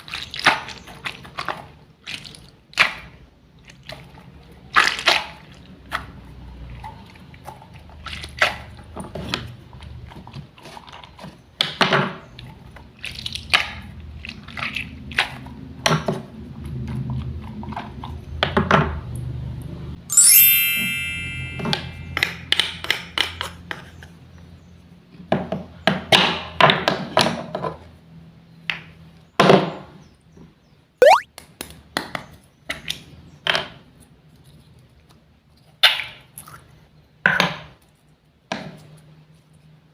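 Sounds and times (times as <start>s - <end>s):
bright ringing chime: 20.1s - 22.4s.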